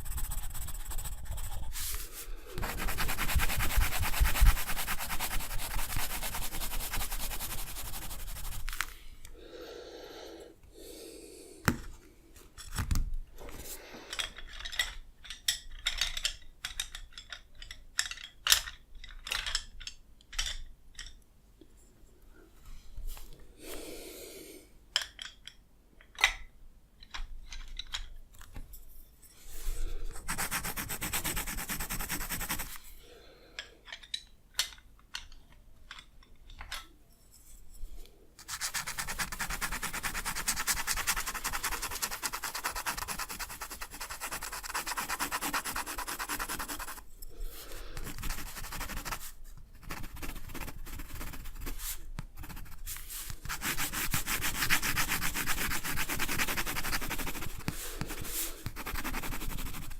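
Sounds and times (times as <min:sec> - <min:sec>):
strokes rubbing on paper: 0:00.0 - 0:08.9, 0:30.1 - 0:32.8, 0:38.4 - 0:47.0, 0:48.0 - 0:59.9.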